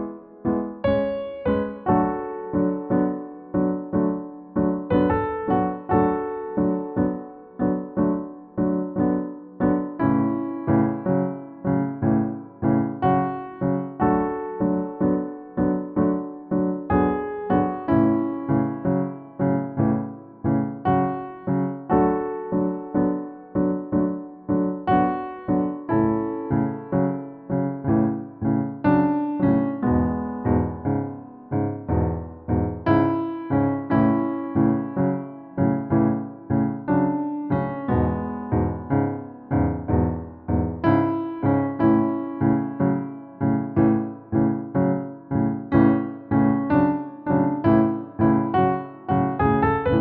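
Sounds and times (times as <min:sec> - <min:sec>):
piano chords and notes: 0:00.0 - 0:50.0.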